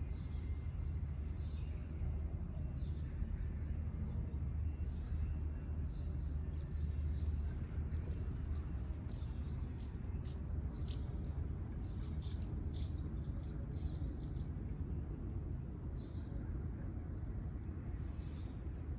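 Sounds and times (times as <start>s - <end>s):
sparrows chirping: 5.2s - 14.6s.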